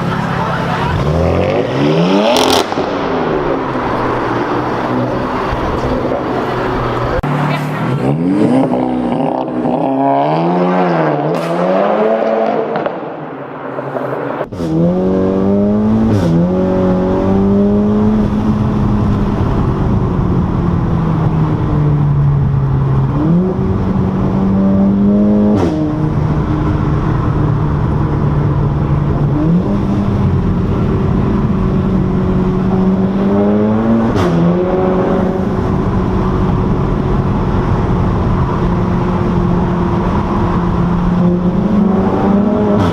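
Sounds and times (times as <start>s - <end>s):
car exhaust revving: 0.0s - 42.9s.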